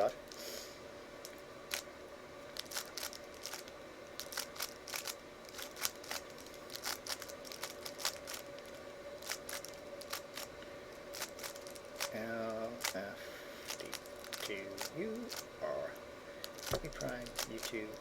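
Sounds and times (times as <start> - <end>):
puzzle cube clicking: 13.7 - 15.4.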